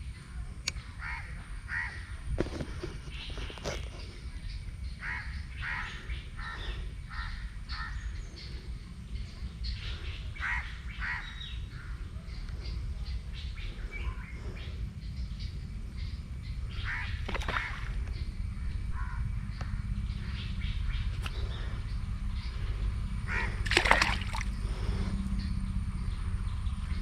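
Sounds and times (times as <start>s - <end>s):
crows cawing: 1.0s - 2.1s, 5.0s - 8.0s, 10.4s - 11.5s, 16.8s - 17.9s, 18.9s - 19.2s, 23.3s - 24.2s
low rumble: 6.2s - 27.0s.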